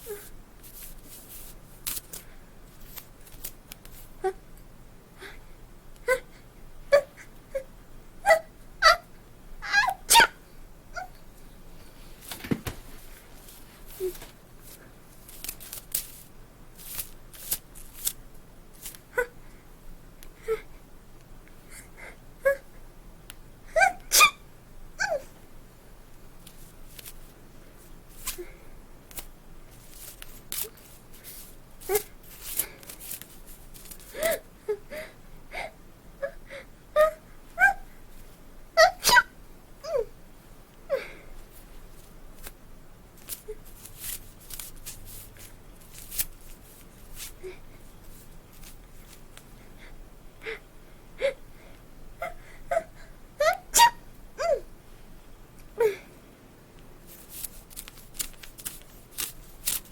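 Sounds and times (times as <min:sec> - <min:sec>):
woman gasping: 0:34.1 - 0:36.7
woman sneezing: 0:38.8 - 0:39.3, 0:53.7 - 0:54.6.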